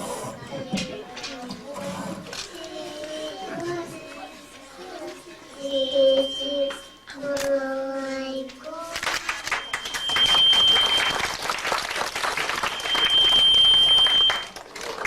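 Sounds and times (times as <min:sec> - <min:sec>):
audience applauding: 0:09.1 - 0:15.0.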